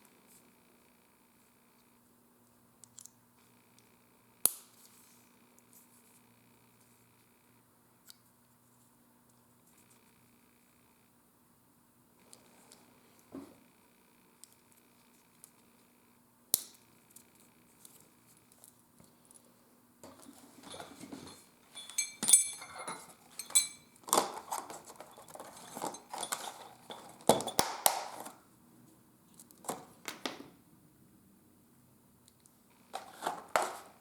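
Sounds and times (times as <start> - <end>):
metal hardware clinking: 20.0 - 28.3.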